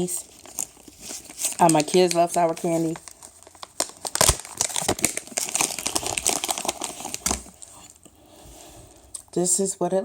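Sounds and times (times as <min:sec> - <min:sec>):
wrapper crackling: 0:00.0 - 0:08.0.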